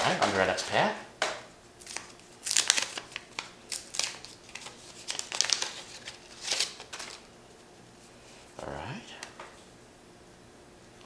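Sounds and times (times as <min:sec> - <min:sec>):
wax paper wrapper tearing: 0:01.8 - 0:07.3.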